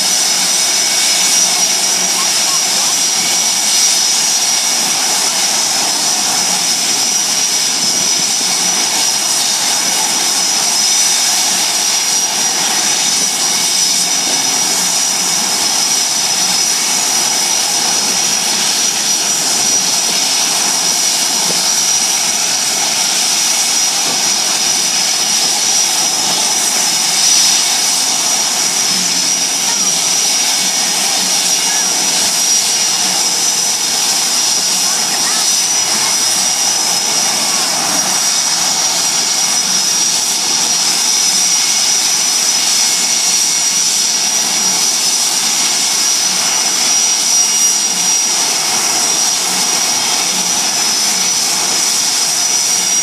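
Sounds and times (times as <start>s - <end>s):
high-pitched jet whine: 0.0s - 53.0s
jet engines roaring: 0.0s - 53.0s.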